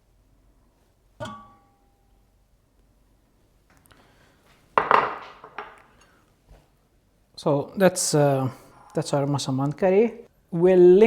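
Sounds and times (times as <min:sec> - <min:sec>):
spoon knocking against a plate: 0:04.8 - 0:05.8.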